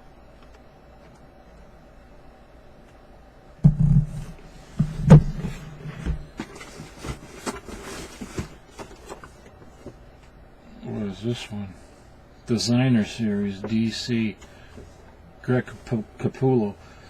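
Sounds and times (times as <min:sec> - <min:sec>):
heavy thump of boxes: 0:03.7 - 0:07.2
packaging rustling: 0:06.2 - 0:09.5.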